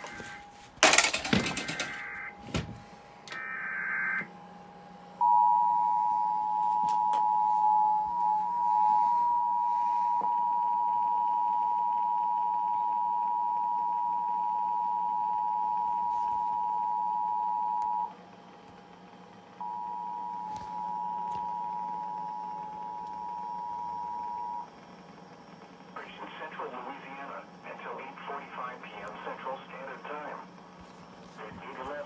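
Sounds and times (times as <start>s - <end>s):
two-tone alarm: 0.0s - 18.2s, 19.6s - 24.7s
faint steady hum: 0.0s - 32.0s.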